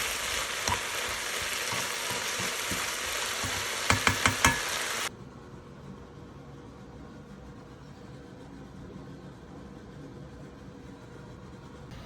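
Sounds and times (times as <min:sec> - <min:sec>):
steady sizzling hiss: 0:00.0 - 0:05.1.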